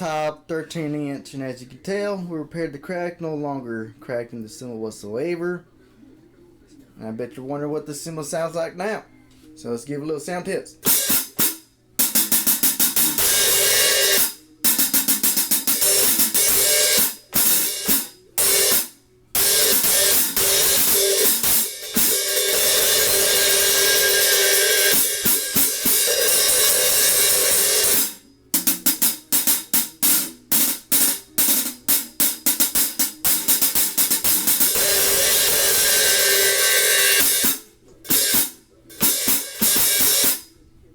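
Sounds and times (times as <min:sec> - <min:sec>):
hi-hat cymbals played: 0:10.8 - 0:40.6.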